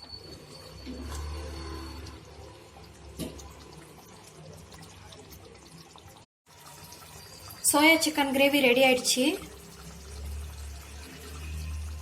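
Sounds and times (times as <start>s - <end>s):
gravy bubbling and popping: 0.3s - 8.2s.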